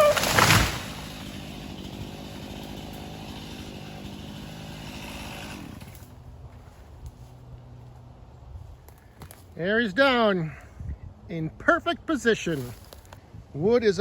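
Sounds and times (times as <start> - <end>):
tree crashing to the ground: 0.0 - 5.8
chainsaw idling: 0.0 - 6.2.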